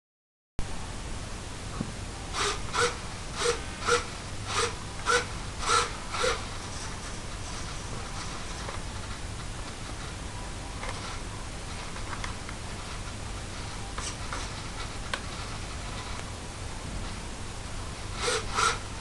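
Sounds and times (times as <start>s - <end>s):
steady hiss: 0.7s - 19.0s
servos whirring: 2.3s - 9.1s, 18.0s - 19.0s.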